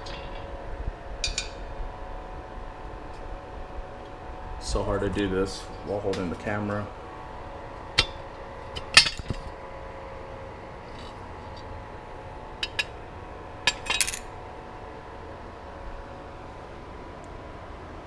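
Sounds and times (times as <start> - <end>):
metallic clinks of steel parts: 13.7 - 14.4.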